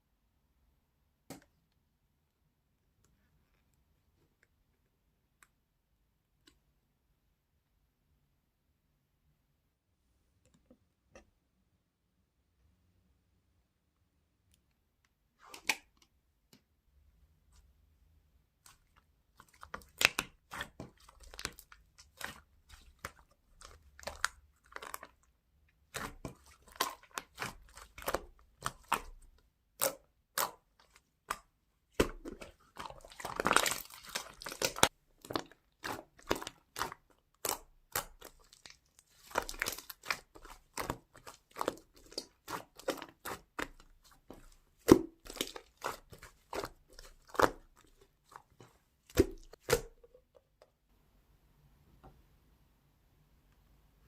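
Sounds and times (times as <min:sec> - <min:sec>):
slime crackling: 0:18.7 - 0:49.9.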